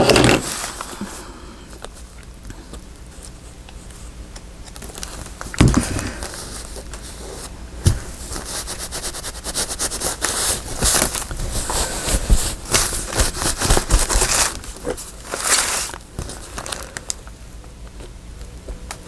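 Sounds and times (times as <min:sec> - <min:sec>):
paper rustling and crinkling: 0:00.0 - 0:02.0, 0:04.6 - 0:17.3.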